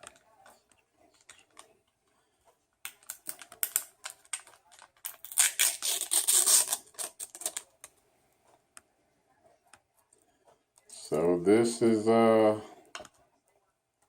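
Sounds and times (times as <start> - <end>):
food packaging clicking and crinkling: 0.0 - 8.6.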